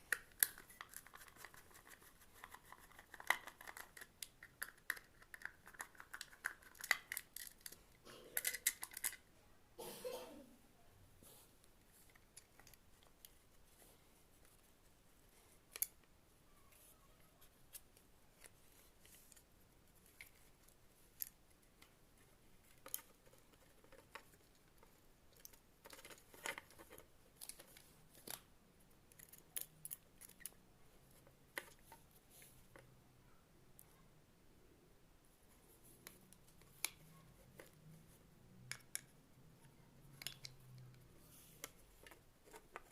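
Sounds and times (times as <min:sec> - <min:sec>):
small hard parts clicking: 0:00.0 - 0:09.3.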